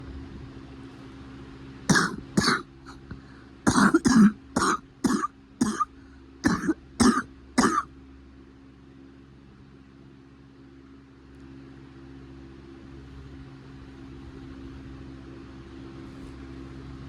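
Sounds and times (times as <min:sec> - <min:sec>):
steady low hum: 0:00.0 - 0:17.0
person coughing: 0:01.9 - 0:07.9.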